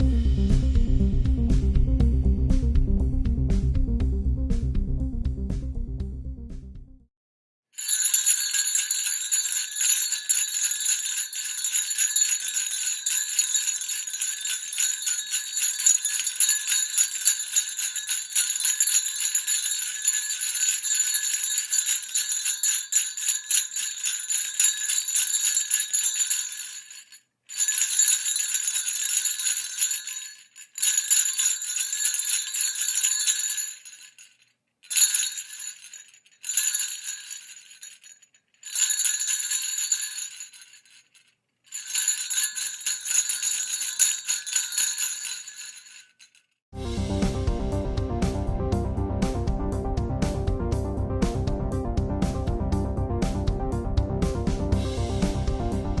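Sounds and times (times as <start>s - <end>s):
sleigh bells jingling: 7.8s - 47.6s.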